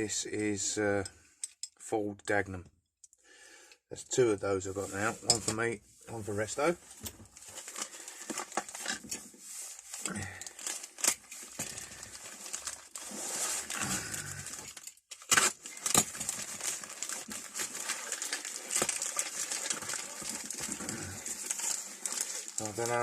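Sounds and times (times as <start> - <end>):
wrapping crinkling and rustling: 4.7 - 23.0.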